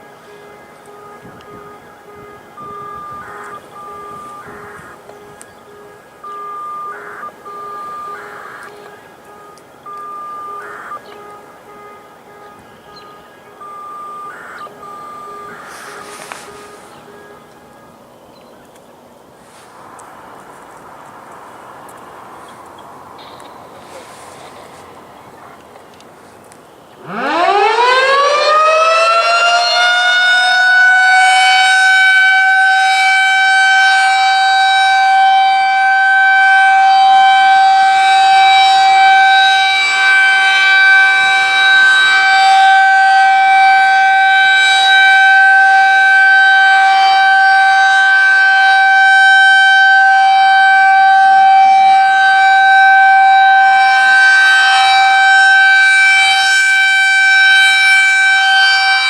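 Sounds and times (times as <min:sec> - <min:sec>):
warning siren winding up: 0:00.8 - 0:11.5, 0:13.6 - 0:17.5, 0:27.0 - 0:59.0.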